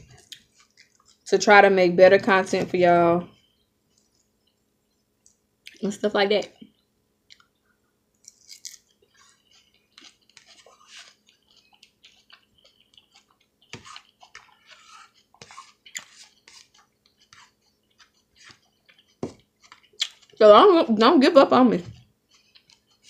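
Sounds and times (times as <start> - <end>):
chewing salad: 0.0 - 1.3, 7.2 - 7.6, 8.2 - 20.4, 22.3 - 23.0
wet crunches and mouth sounds: 0.0 - 1.3, 8.2 - 20.4.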